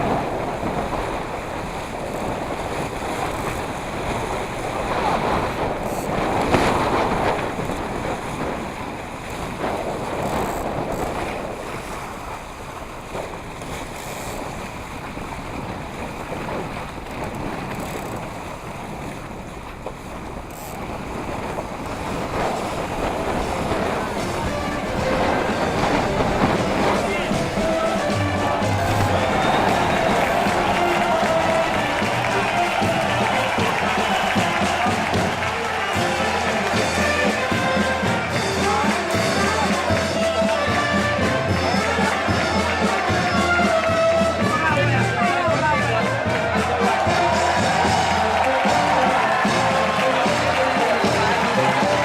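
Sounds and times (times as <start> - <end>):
wind buffeting microphone: 0.0 - 36.8
water splashing along boat hull: 0.0 - 52.0.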